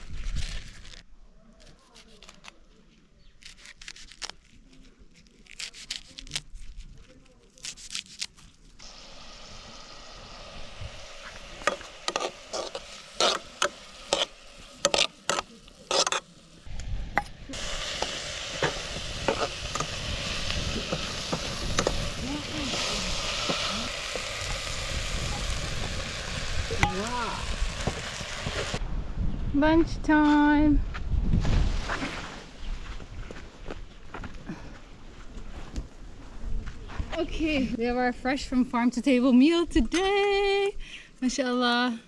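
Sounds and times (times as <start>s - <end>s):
vegetables sizzling in a pot: 8.8s - 16.7s, 17.4s - 28.8s.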